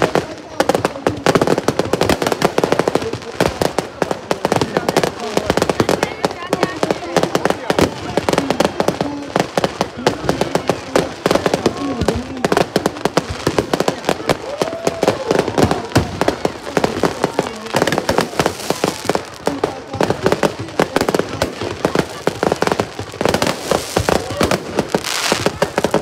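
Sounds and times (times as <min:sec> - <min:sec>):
fireworks bangs and crackles: 0:00.0 - 0:26.0.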